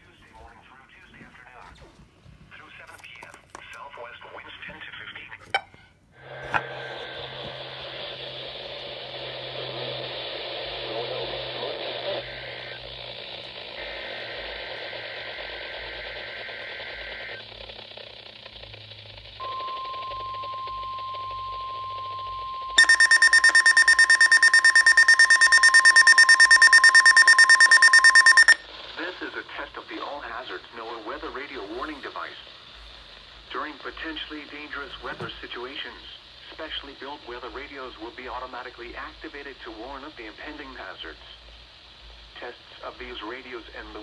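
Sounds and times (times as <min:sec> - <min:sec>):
radio static hiss: 0:00.0 - 0:05.6, 0:06.3 - 0:20.1, 0:22.8 - 0:44.0
steady alarm tone: 0:19.4 - 0:28.6
rapidly pulsing alarm beep: 0:22.8 - 0:28.6.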